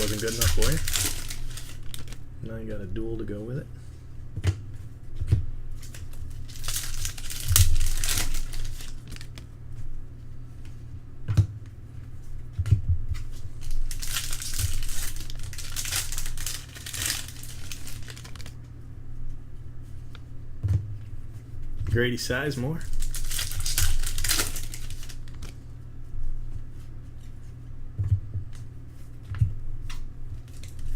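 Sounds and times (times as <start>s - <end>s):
wrappers tearing and crinkling: 0.0s - 2.3s, 5.8s - 9.5s, 13.4s - 18.6s, 22.8s - 25.6s, 30.5s - 30.9s
steady low hum: 0.0s - 30.9s.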